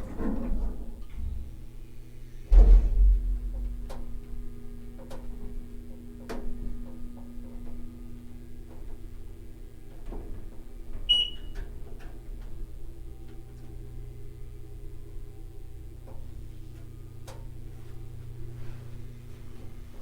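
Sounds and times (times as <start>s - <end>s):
elevator motor hum: 0.0s - 20.0s
short high beep: 11.1s - 11.5s.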